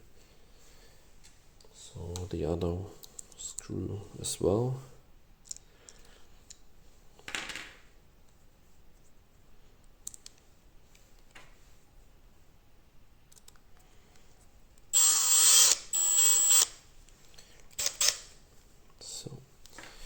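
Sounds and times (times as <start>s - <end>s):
electric screwdriver running: 15.0s - 16.7s, 17.8s - 18.2s.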